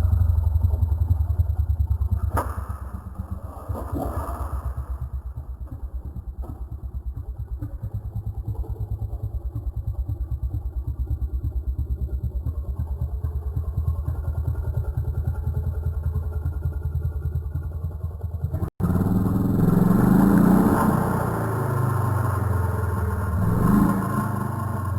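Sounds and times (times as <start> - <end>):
chainsaw engine idling: 0.0 - 24.9
chainsaw engine revving: 18.6 - 24.9.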